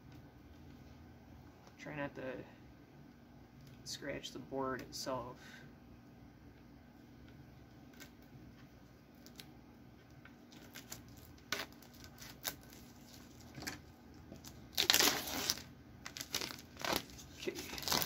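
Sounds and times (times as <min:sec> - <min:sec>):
packaging tearing and crinkling: 0:10.5 - 0:13.8, 0:14.4 - 0:18.0.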